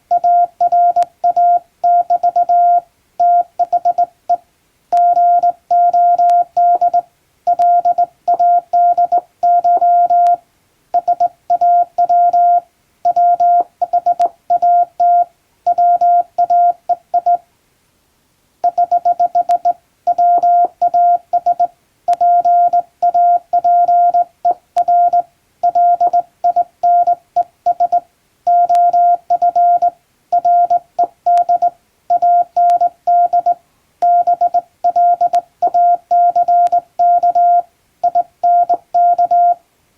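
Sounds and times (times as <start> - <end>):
morse code beeps: 0.1 - 4.4, 5.0 - 10.4, 11.0 - 17.4, 18.6 - 39.6.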